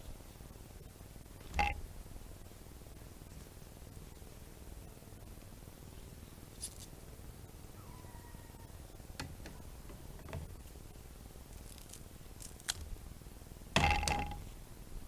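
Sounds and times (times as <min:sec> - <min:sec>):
leaves and paper rustling: 0:06.6 - 0:06.9, 0:11.5 - 0:12.9.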